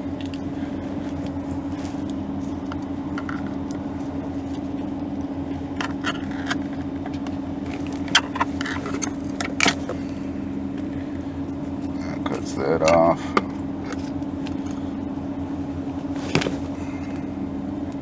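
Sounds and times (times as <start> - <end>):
steady low hum: 0.0 - 18.0
cable jacket being slit: 16.1 - 16.8.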